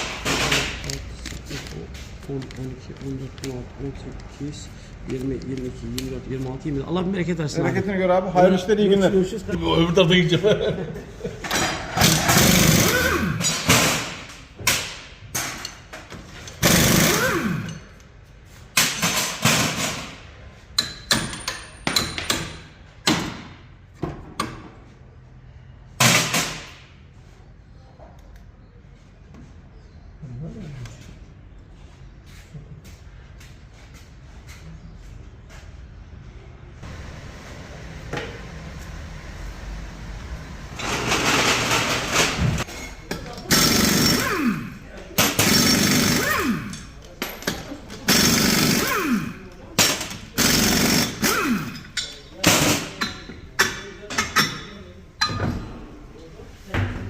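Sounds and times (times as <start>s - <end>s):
motor running: 43.5s - 44.8s.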